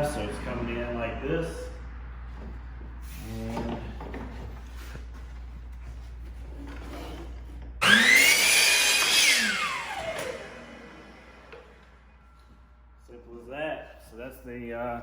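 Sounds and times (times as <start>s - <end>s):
miter saw motor whine: 7.8s - 12.5s.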